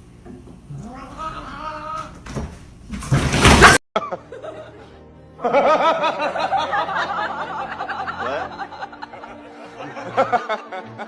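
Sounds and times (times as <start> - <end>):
music: 4.0 - 11.0.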